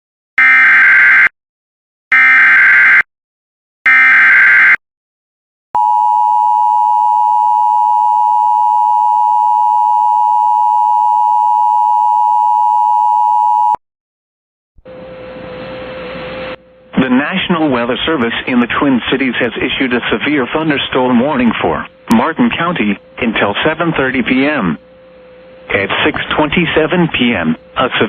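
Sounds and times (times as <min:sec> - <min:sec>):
long steady attention tone: 0:05.8 - 0:13.8, 0:14.8 - 0:28.0.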